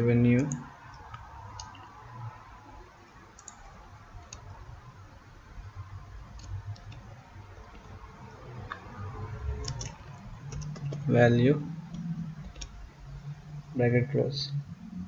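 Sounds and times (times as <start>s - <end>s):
low steady hum: 0.0s - 15.0s
keyboard and mouse clicks: 0.4s - 1.9s, 3.4s - 4.5s, 6.3s - 8.0s, 9.5s - 11.2s, 11.9s - 12.8s.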